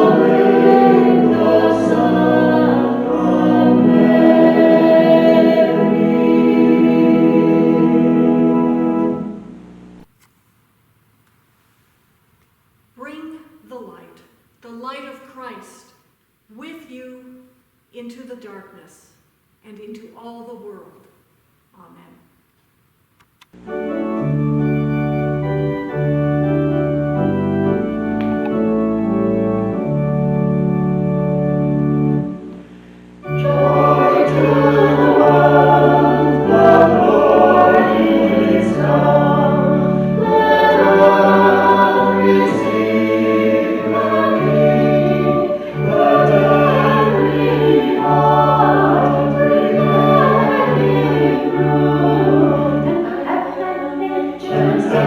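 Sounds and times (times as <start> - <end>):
voices singing a hymn: 0.0 - 9.4, 33.2 - 55.0
organ chords: 0.0 - 10.1, 21.6 - 55.0.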